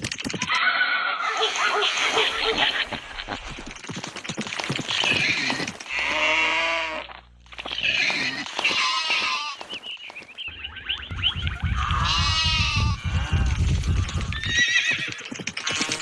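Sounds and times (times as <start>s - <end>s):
animal calls: 0.4s - 3.4s, 4.8s - 16.0s
low rumble: 10.5s - 14.4s.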